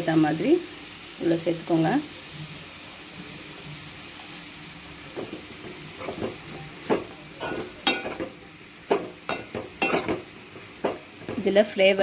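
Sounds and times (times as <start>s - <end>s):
food sizzling in a pan: 0.0s - 12.0s
spoon scraping and clinking pan: 4.2s - 4.6s, 6.0s - 11.0s.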